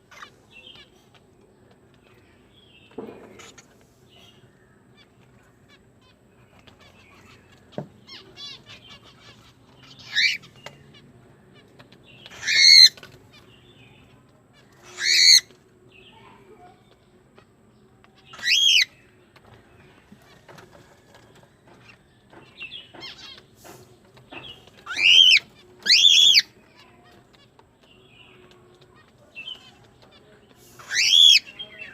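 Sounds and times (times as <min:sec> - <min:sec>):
cockatiel loud calls: 0:10.0 - 0:10.4, 0:12.3 - 0:13.0, 0:14.8 - 0:15.5, 0:18.3 - 0:18.9, 0:24.9 - 0:26.5, 0:30.8 - 0:31.5
cockatiel soft chirps: 0:12.2 - 0:13.0, 0:14.8 - 0:15.5, 0:18.3 - 0:18.9, 0:24.8 - 0:27.0, 0:30.5 - 0:31.9.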